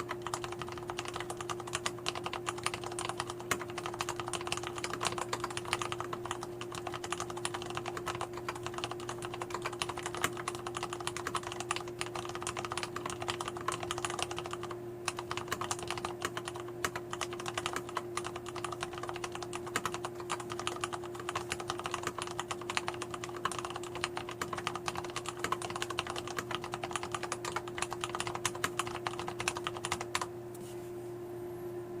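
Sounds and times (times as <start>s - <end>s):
mechanical keyboard typing: 0.0s - 30.3s
steady low hum: 0.0s - 32.0s.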